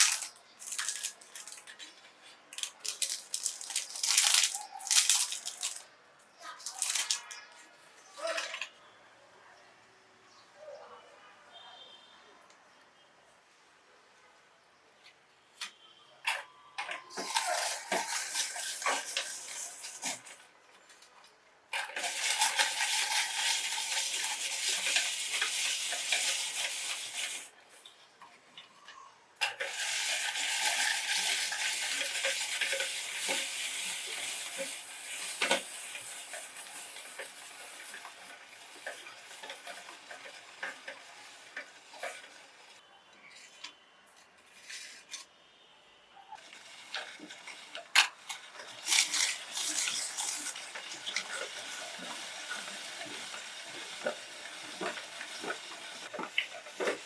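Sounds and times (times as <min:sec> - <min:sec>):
meat grinder crushing biscuits: 0:00.0 - 0:05.8, 0:17.1 - 0:20.4, 0:21.8 - 0:27.5, 0:29.4 - 0:42.6, 0:46.4 - 0:57.0.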